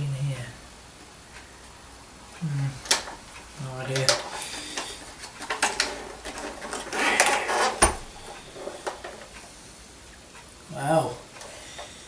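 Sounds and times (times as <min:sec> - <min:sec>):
scraping rustle: 0:02.4 - 0:09.6
vacuum cleaner clicks and knocks: 0:03.9 - 0:09.3.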